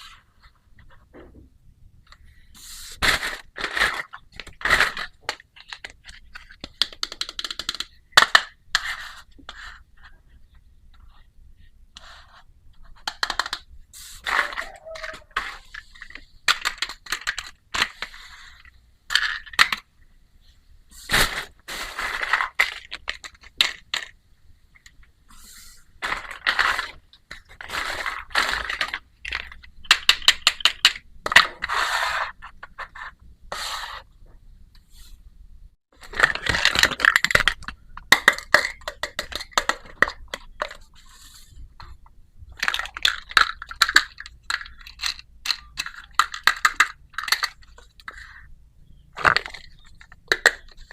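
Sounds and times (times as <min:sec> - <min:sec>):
plastic toy pieces clicking: 0:04.3 - 0:08.6, 0:14.5 - 0:18.1, 0:22.3 - 0:24.2, 0:26.1 - 0:31.5, 0:36.0 - 0:40.9, 0:42.6 - 0:48.4, 0:49.2 - 0:50.9.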